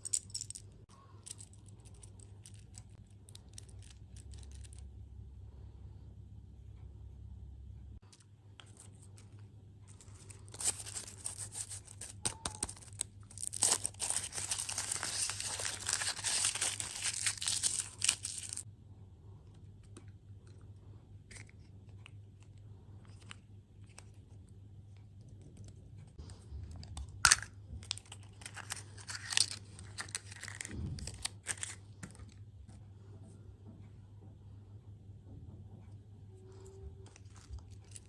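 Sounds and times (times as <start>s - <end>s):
plastic packaging tearing and crinkling: 10.1s - 18.6s, 27.2s - 31.8s.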